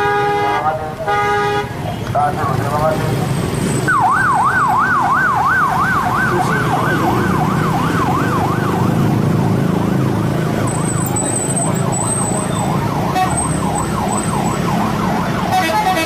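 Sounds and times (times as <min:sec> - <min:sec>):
vehicle engine rumble: 0:00.0 - 0:16.0
electronic yelp siren: 0:03.8 - 0:16.0.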